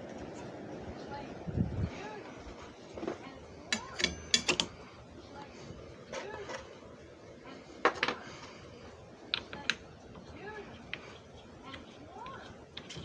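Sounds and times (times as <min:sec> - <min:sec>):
sharp clicks and knocks: 0:03.7 - 0:04.8.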